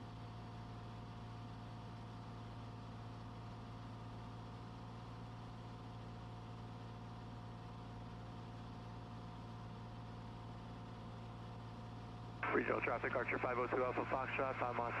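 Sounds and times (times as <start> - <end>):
airplane engine and propeller drone: 10.2 - 15.0
faint steady whine: 12.4 - 15.0.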